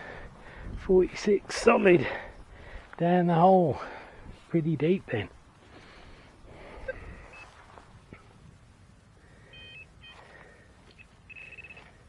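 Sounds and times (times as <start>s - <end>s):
metal detector beeping: 6.7s - 7.6s, 9.5s - 12.0s.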